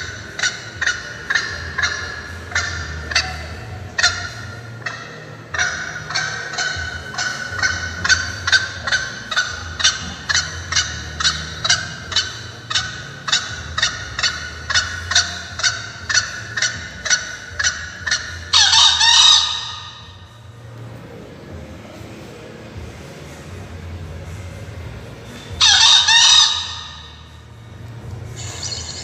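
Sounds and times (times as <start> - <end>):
recorded bird call through speaker: 0.0 - 20.4, 25.3 - 27.3.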